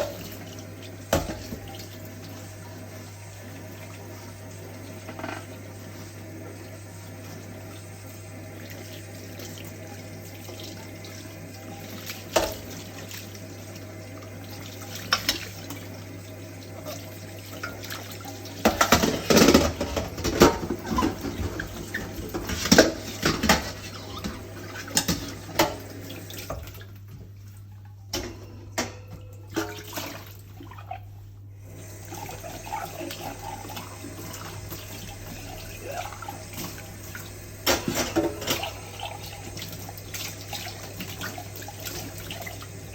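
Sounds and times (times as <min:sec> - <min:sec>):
tap running into a sink: 0:01.0 - 0:02.4, 0:18.6 - 0:27.3
dishes clinking: 0:37.6 - 0:39.2.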